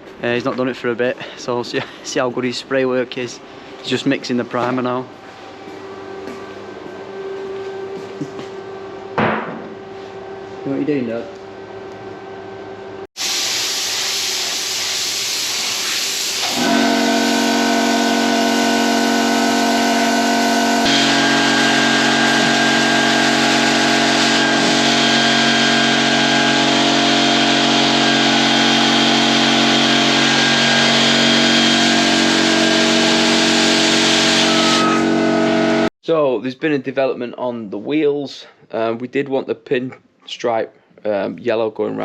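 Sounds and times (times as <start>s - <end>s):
spray gun hissing: 13.2s - 16.6s
machine humming: 16.3s - 35.9s.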